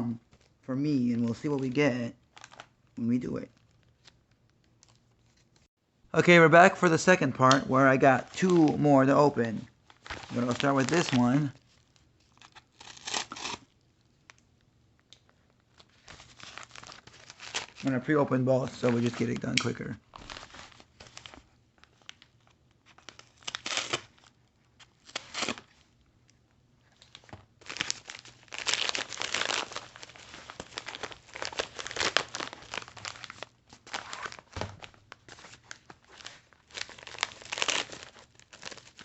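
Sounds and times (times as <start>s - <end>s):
packaging tearing and crinkling: 2.3s - 2.7s, 9.9s - 13.8s, 15.8s - 17.8s, 18.8s - 24.3s, 24.9s - 25.9s, 27.0s - 39.0s.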